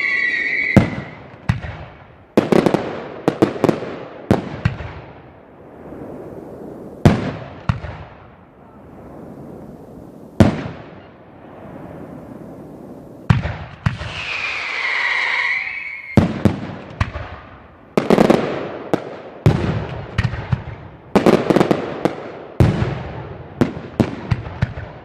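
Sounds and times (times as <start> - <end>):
high falling whistle: 0.0 - 1.3, 14.0 - 16.2
fireworks bangs: 0.0 - 25.0
fireworks crackling: 0.0 - 25.0.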